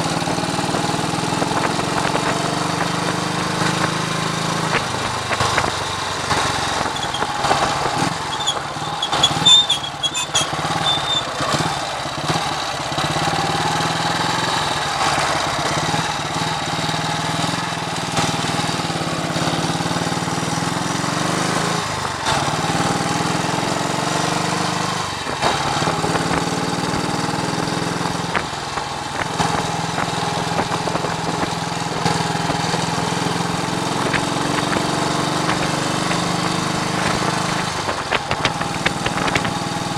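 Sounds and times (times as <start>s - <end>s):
wind buffeting microphone: 0.0s - 9.4s, 24.9s - 39.9s
motorcycle engine running: 0.0s - 39.9s.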